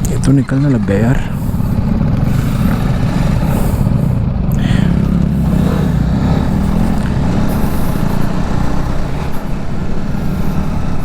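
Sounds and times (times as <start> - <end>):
ground noise: 0.0 - 11.0
motorcycle engine running: 0.0 - 11.0.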